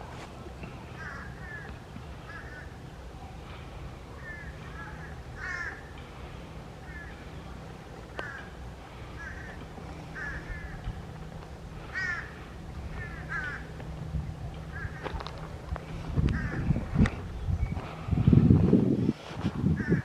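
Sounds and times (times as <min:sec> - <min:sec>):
steady low rumble: 0:00.0 - 0:20.0
bird calling: 0:00.6 - 0:13.8.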